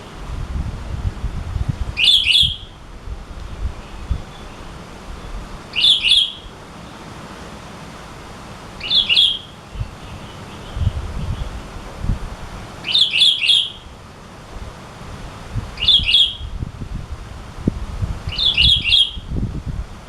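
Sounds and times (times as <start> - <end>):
bulbul calling: 2.0 - 2.8, 3.8 - 7.1, 8.8 - 11.6, 12.8 - 14.0, 15.8 - 16.6, 18.3 - 19.3.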